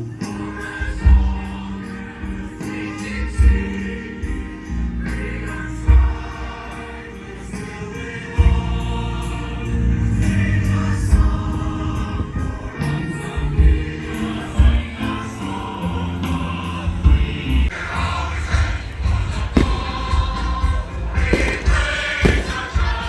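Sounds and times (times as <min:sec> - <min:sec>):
choir singing: 0:00.0 - 0:23.0
deep thud: 0:19.6 - 0:23.0.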